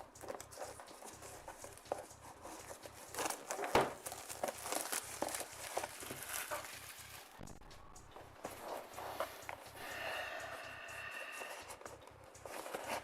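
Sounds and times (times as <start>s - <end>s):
packaging crinkling and tearing: 0.2s - 7.5s.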